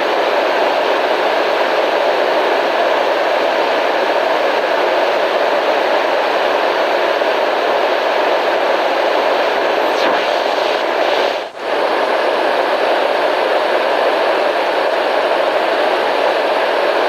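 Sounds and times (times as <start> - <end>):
steady white noise hiss: 6.5 - 17.0.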